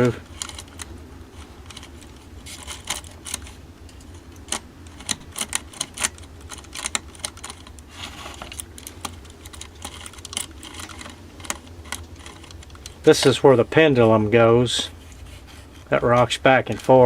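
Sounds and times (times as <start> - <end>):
clock parts clicking and tapping: 0.0 - 13.4
steady low hum: 0.0 - 17.0.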